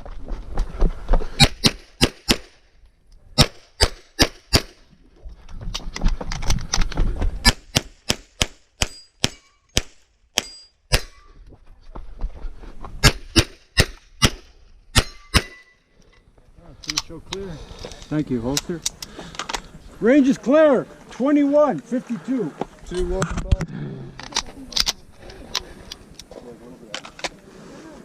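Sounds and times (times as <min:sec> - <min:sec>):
pistol shots: 0:13.0 - 0:15.6
movement noise: 0:15.9 - 0:28.0.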